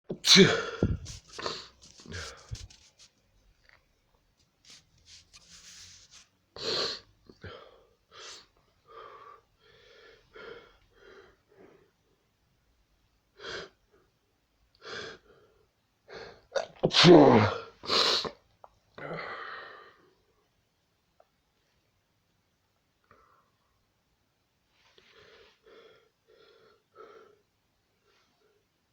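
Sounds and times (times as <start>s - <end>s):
person sneezing: 0.1s - 2.8s.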